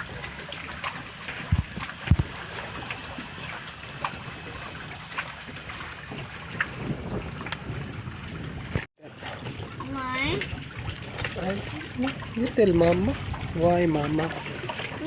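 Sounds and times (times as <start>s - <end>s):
water lapping around kayak: 0.0s - 15.0s
dull low thumps: 12.2s - 15.0s.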